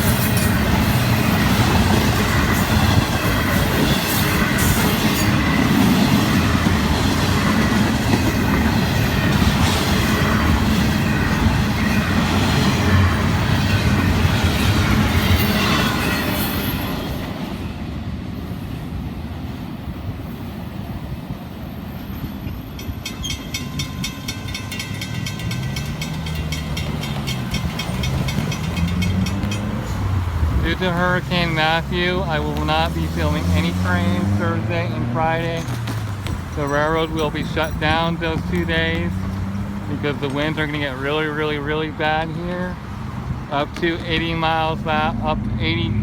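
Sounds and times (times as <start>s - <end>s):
freight train rolling on rails: 0.0s - 46.0s
wheel squeal: 25.1s - 30.2s
road vehicle passing: 25.1s - 46.0s.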